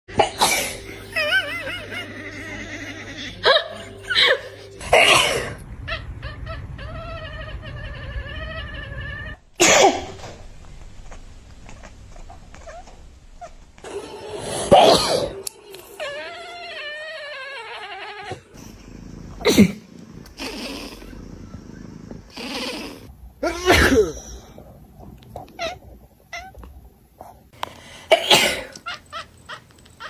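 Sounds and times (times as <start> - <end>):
person sneezing loudly: 23.4 - 24.2.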